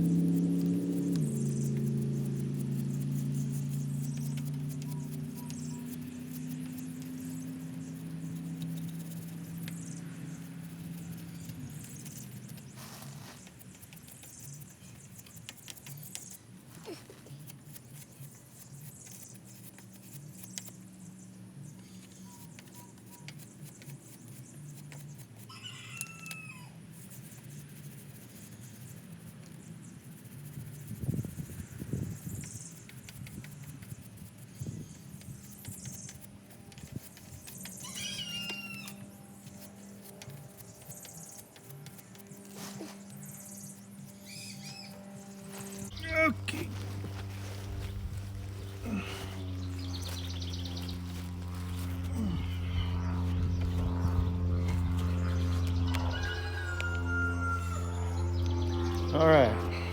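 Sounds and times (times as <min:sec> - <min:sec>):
steady low hum: 0:00.0 - 0:25.4, 0:38.8 - 0:59.9
faint scratching and clicking: 0:00.0 - 0:25.5, 0:26.1 - 0:46.0
bird calling: 0:37.7 - 0:39.0, 0:42.6 - 0:53.9.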